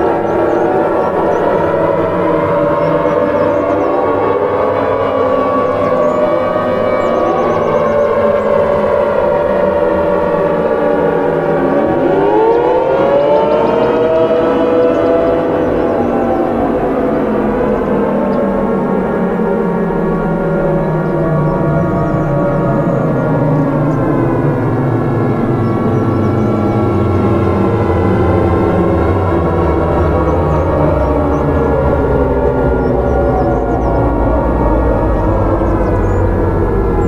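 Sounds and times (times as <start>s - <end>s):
warning siren: 0.0s - 37.0s.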